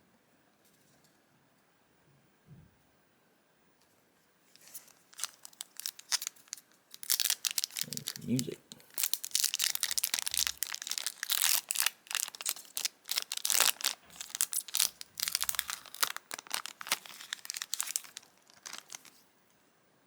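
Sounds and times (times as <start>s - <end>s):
foil wrapper crinkling and tearing: 4.6s - 19.2s.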